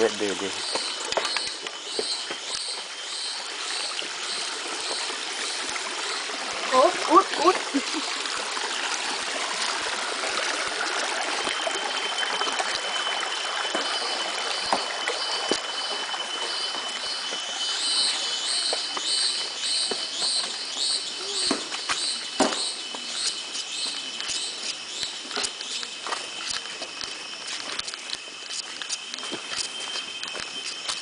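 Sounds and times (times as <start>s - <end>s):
stream water running: 0.0s - 31.0s
thin high whine: 11.4s - 31.0s
high chirping call: 13.8s - 26.6s.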